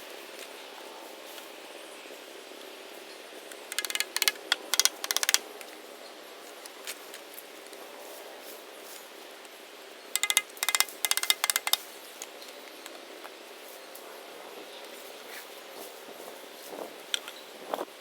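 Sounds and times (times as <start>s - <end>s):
rapid ratchet-like clicking: 3.5s - 5.7s, 10.2s - 11.9s.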